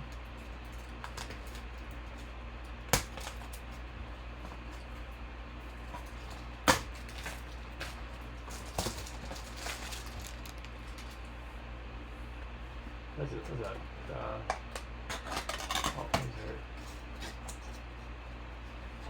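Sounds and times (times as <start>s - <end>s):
cards clicking and rustling: 8.6s - 11.2s.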